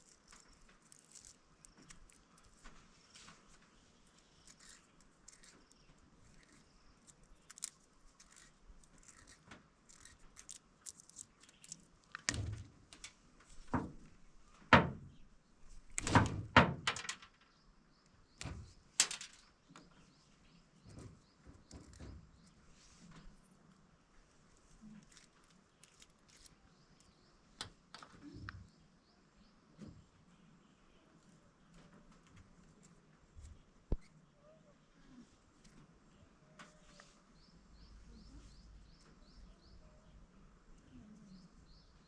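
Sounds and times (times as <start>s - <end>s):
clicks and knocks: 16.0s - 17.5s.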